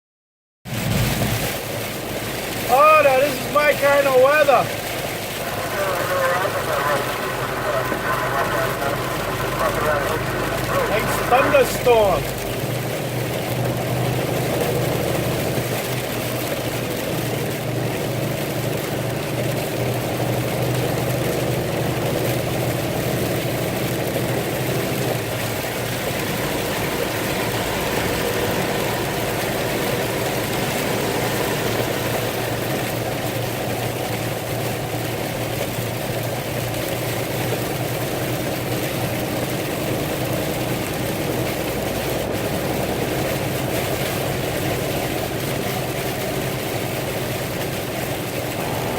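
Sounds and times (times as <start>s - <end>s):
car engine hum inside cabin: 0.7s - 48.9s
rain hiss: 0.7s - 48.9s
road noise: 0.7s - 48.9s.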